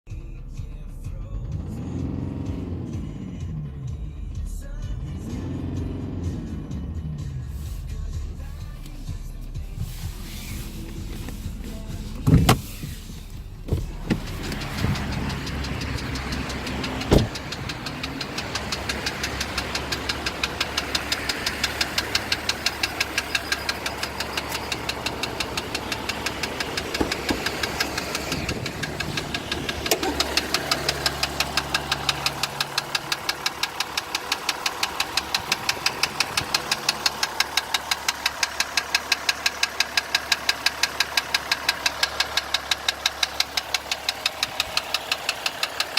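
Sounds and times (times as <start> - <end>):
diesel engine knocking: 0.1 - 45.9
loud thumps: 12.2 - 17.7.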